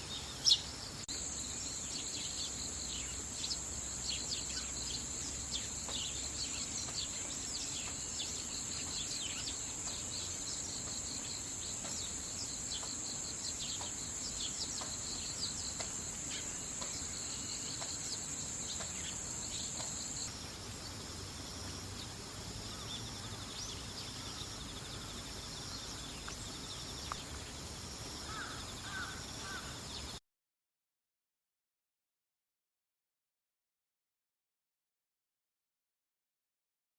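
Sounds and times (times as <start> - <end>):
sparrows chirping: 0.0 - 20.3, 21.6 - 30.2
crickets trilling: 0.0 - 30.2.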